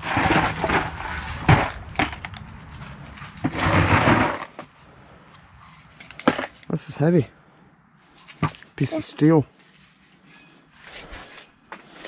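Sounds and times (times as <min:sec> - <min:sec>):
metal parts clanking: 0:00.0 - 0:02.8.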